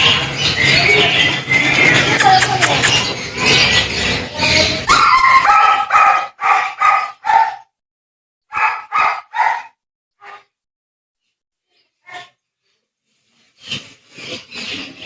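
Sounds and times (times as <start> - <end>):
small dog yapping: 1.8 - 3.8, 4.8 - 7.6.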